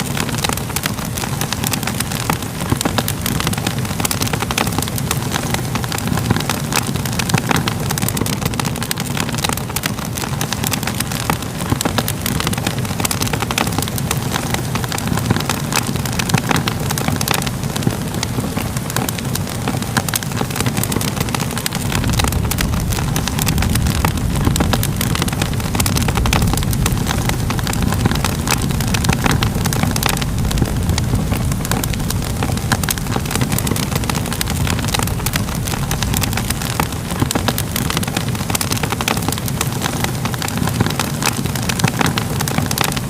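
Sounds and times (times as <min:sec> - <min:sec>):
fire crackling and popping: 0:00.0 - 0:43.0
deep rumble: 0:21.3 - 0:38.4.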